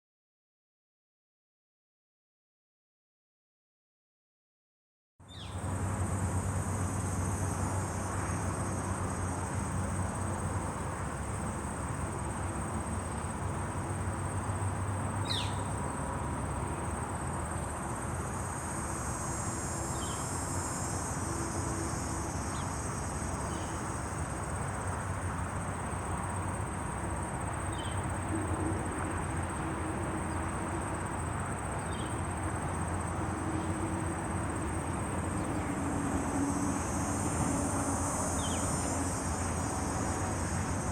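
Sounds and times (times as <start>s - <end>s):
crickets trilling: 5.3s - 40.9s
low wind rumble: 5.6s - 40.9s
bird chirps: 15.2s - 15.7s.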